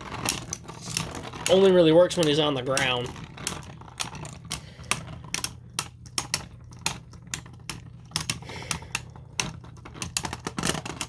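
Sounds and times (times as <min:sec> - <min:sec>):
spinning tops clacking: 0:00.2 - 0:08.4.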